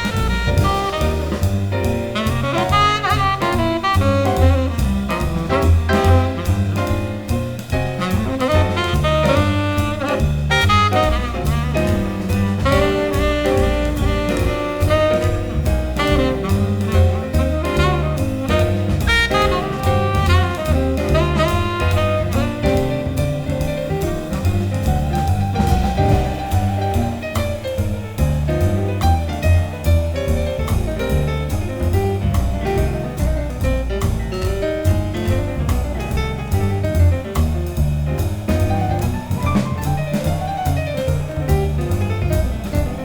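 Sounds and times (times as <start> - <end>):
saxophone melody: 0.0 - 1.5, 2.2 - 6.8, 8.0 - 23.5
drum kit beat: 0.0 - 43.0
walking double bass: 0.0 - 43.0.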